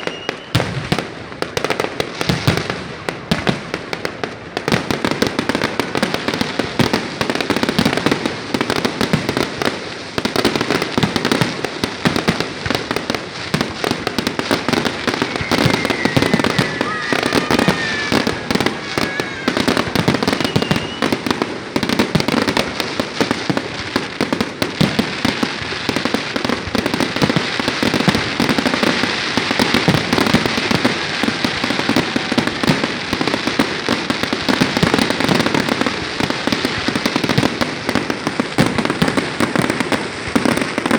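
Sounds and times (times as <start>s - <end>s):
faint firework whistles: 0.0s - 1.0s, 14.6s - 21.4s, 27.9s - 35.8s
fireworks bangs and crackling: 0.0s - 40.9s.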